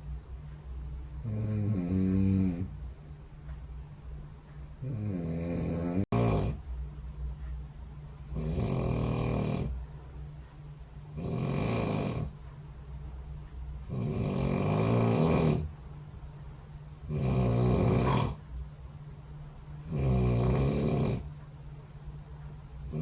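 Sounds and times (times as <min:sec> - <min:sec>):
steady low hum: 0:00.0 - 0:23.0
person snoring: 0:01.2 - 0:02.7, 0:04.8 - 0:06.6, 0:08.4 - 0:09.7, 0:11.2 - 0:12.3, 0:13.9 - 0:15.7, 0:17.1 - 0:18.4, 0:19.9 - 0:21.2.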